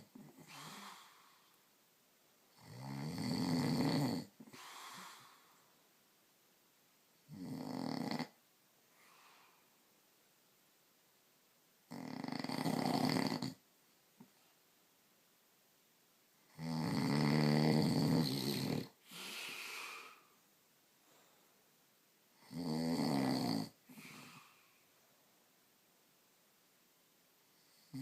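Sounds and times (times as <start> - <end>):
soft breath: 0.2 - 1.7, 4.4 - 5.8, 8.8 - 9.9, 19.0 - 21.7, 23.8 - 25.4
man snoring loudly: 2.6 - 4.3, 7.3 - 8.4, 11.9 - 13.6, 16.5 - 19.0, 22.4 - 23.8.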